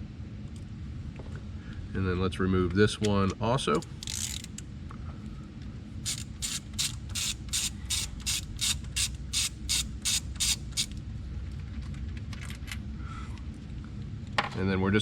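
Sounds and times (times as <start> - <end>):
socket ratchet clicking: 4.0 - 4.6, 6.0 - 10.9.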